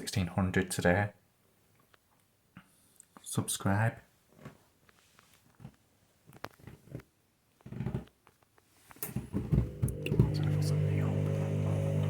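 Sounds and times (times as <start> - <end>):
washing machine tumbling laundry: 9.1 - 12.0.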